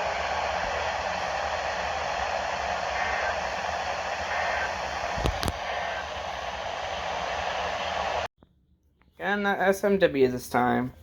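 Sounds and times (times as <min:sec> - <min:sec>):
radio static hiss: 0:00.0 - 0:08.3
sharp clicks: 0:05.0 - 0:05.7.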